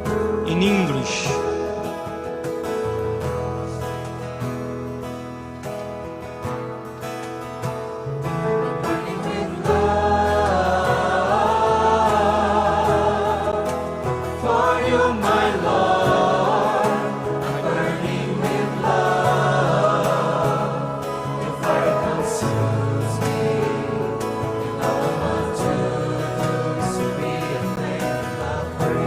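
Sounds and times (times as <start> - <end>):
bass: 0.0 - 29.0
guitar: 0.0 - 29.0
choir singing worship song: 8.6 - 29.0.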